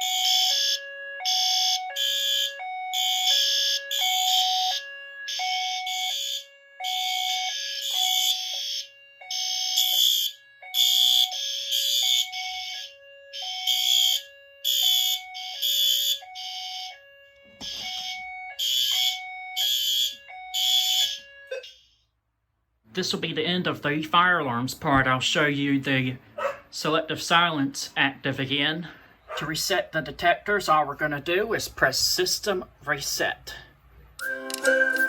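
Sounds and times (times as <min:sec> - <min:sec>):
fire alarm horn blasts: 0:00.0 - 0:22.1
two-tone alarm tone: 0:00.0 - 0:22.1, 0:34.2 - 0:35.0.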